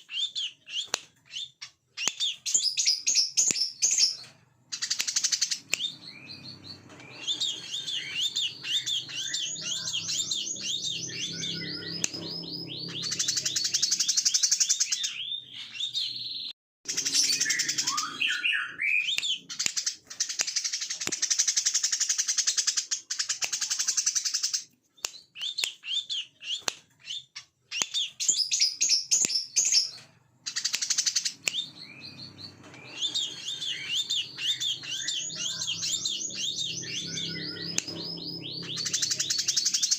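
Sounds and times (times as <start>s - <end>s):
sunbird chattering song: 0.2s - 16.0s, 16.9s - 20.0s, 30.5s - 39.9s.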